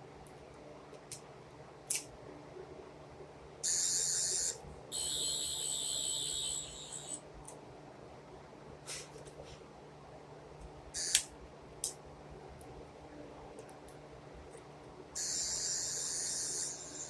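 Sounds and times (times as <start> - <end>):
toy electronic warbling whir: 3.6 - 7.2, 11.0 - 11.2, 15.2 - 17.0.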